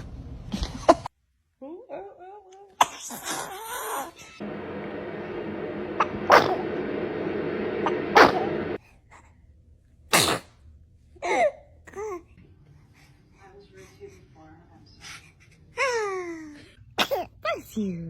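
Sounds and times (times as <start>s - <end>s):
steady hiss: 4.4s - 8.8s
baby sneezing: 10.1s - 10.6s, 17.0s - 17.4s.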